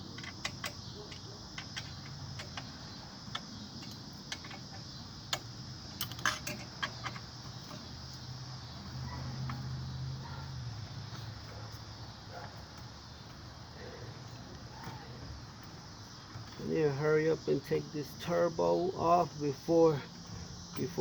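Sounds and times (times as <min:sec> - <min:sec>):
metallic clicks of hand tools: 0:00.0 - 0:07.8.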